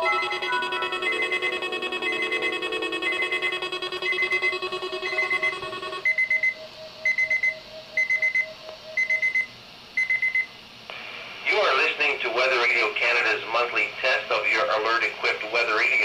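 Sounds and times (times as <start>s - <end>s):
steady multi-note tone: 0.0s - 9.0s
high alarm beep: 0.0s - 10.6s.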